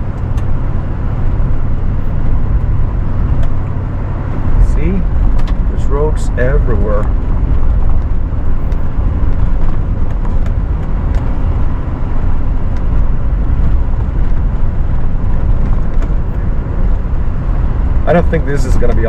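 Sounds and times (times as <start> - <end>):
engine and tyres rumbling: 0.0 - 19.0.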